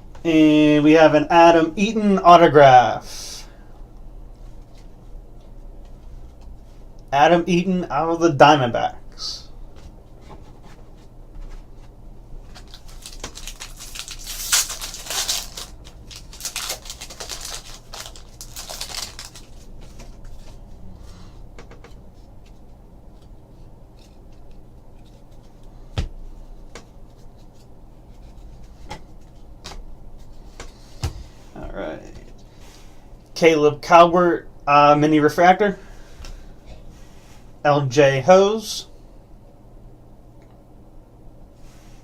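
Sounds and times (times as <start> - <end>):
cards being handled: 12.4 - 20.6
foil wrapper crinkling and tearing: 12.6 - 19.7.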